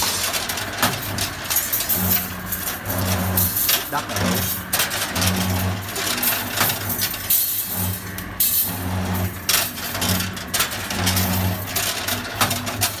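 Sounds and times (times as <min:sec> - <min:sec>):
machine motor humming: 0:02.8 - 0:06.1.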